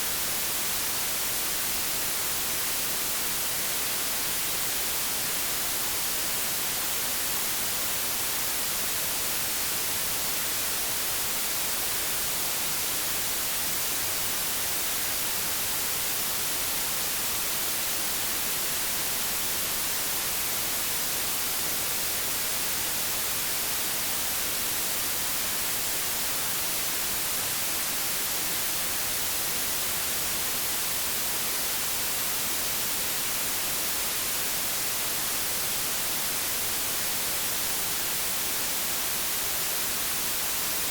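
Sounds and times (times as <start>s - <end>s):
white noise hiss: 0.0s - 40.9s.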